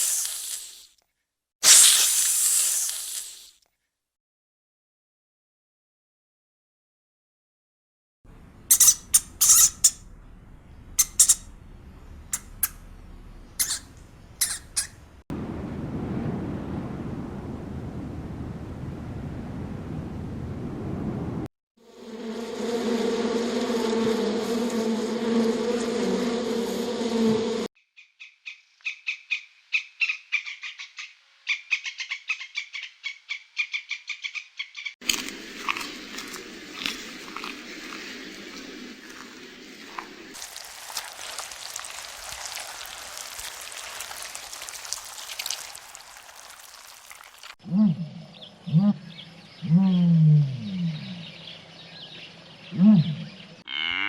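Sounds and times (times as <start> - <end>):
insect-like buzz: 8.6 - 10.1, 11.0 - 11.6, 21.8 - 27.7
animal squawking: 8.7 - 10.1, 11.0 - 11.6, 12.3 - 12.9, 13.5 - 15.1.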